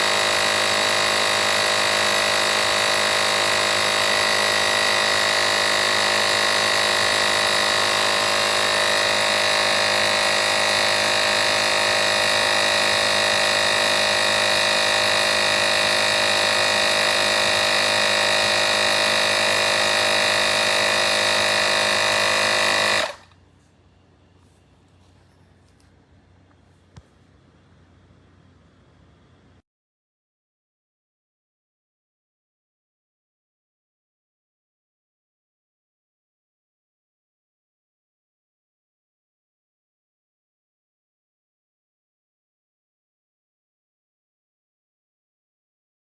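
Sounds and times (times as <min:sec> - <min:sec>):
tire inflator compressor whining: 0:00.0 - 0:23.4.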